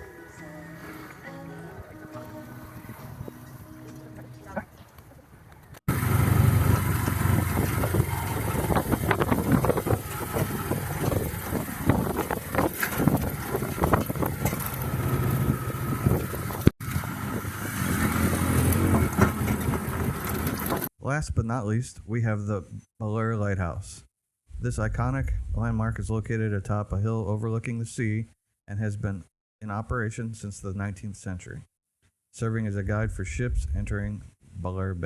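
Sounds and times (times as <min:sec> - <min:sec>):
road and wind noise: 0:00.0 - 0:20.9
motorcycle engine running: 0:05.9 - 0:20.9.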